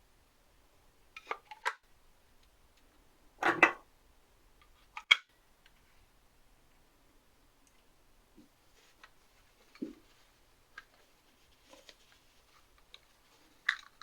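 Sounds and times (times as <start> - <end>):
rustling scrape: 8.7 - 13.7.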